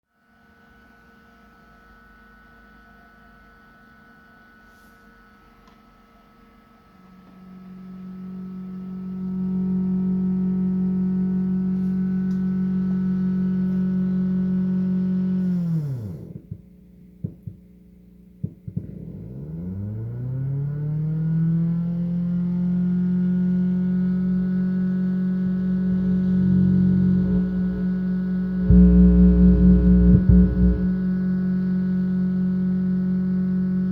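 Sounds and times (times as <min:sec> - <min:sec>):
low fluttering hum: 0:23.4 - 0:33.9
fan interference whine: 0:23.8 - 0:33.9.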